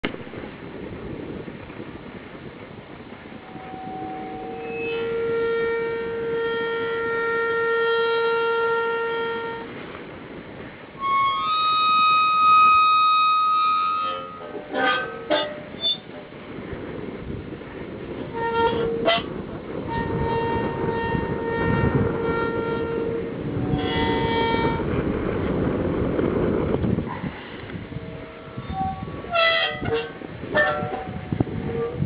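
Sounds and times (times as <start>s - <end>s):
metal gate squealing: 4.0s - 5.3s, 13.0s - 16.1s.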